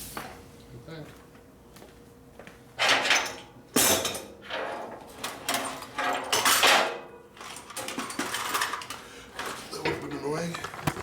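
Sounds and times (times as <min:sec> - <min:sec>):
metal tools clattering and clinking: 0:02.8 - 0:10.8.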